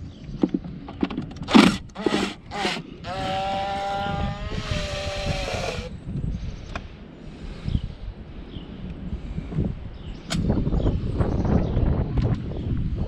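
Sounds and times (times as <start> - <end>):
wind rumbling on microphone: 0.0 - 13.0
tyre and road noise: 0.3 - 6.0.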